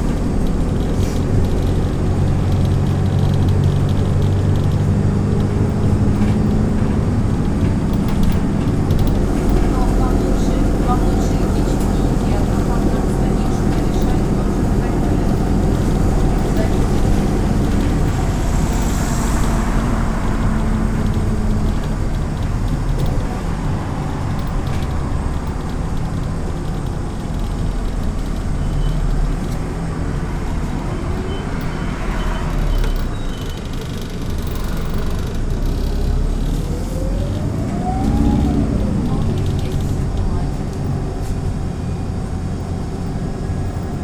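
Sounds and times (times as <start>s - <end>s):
bus engine and road noise: 0.0s - 44.0s
rising whine: 17.1s - 24.1s, 36.7s - 40.9s.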